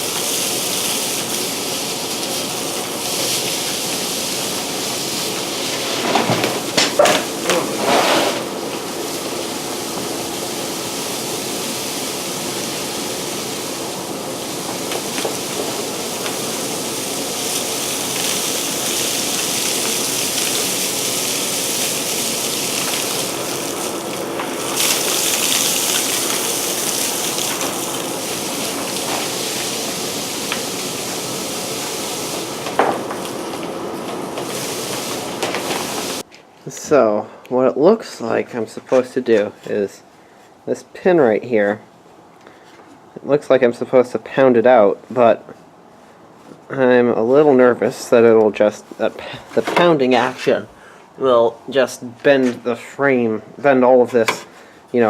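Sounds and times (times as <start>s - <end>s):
power tool whirring: 0.0s - 36.2s.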